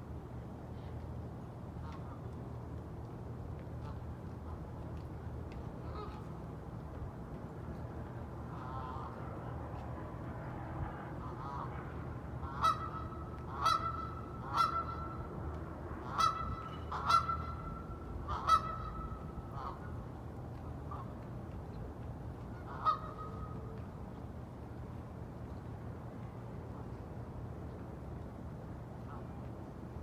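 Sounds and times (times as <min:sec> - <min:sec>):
waterfowl honking: 0:12.4 - 0:15.2, 0:16.1 - 0:19.8, 0:22.7 - 0:23.5.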